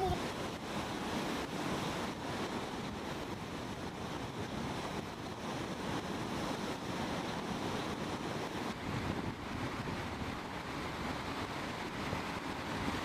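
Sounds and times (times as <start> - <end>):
rushing water: 0.0 - 13.0
wind on microphone: 0.0 - 13.0.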